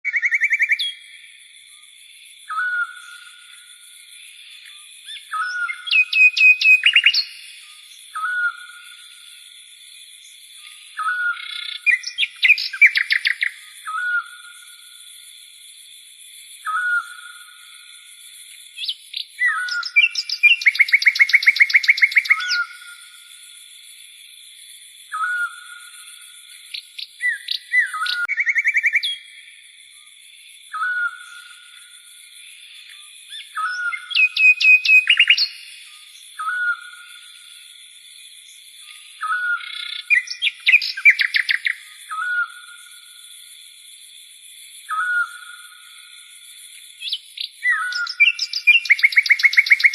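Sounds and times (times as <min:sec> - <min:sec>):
bird singing with rattling trills: 0:00.0 - 0:01.2, 0:04.6 - 0:09.3, 0:10.1 - 0:14.9, 0:18.8 - 0:23.2, 0:25.0 - 0:29.4, 0:33.0 - 0:37.2, 0:38.4 - 0:42.9, 0:47.0 - 0:49.9.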